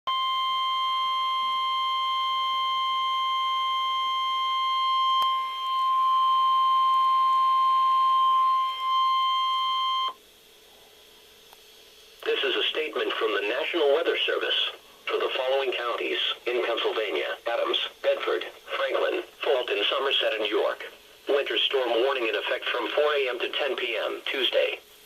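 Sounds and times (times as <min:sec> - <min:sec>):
steady alarm tone: 0:00.1 - 0:10.6.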